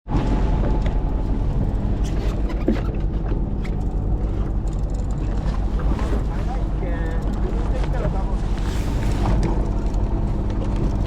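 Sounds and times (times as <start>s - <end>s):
boat engine droning: 0.1s - 11.0s.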